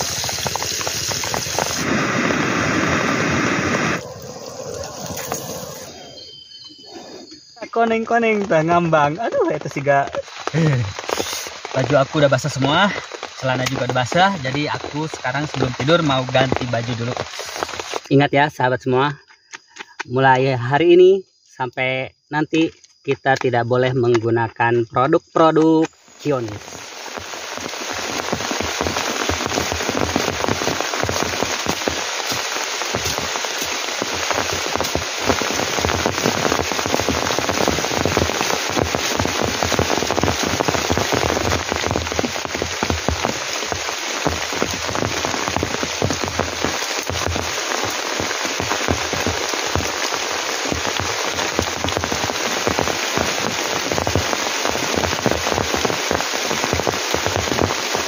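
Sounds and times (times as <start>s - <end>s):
heavy rain falling: 0.0s - 18.2s, 26.2s - 58.0s.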